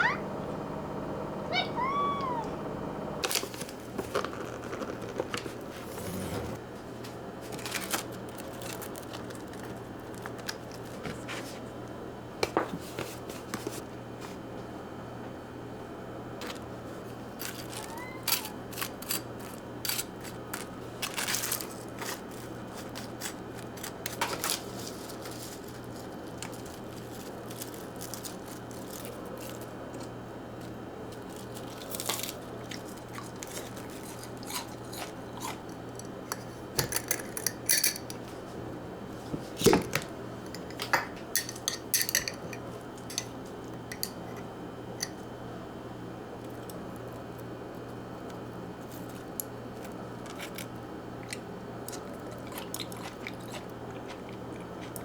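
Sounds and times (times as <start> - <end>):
dishes and utensils clinking: 40.5 - 43.3.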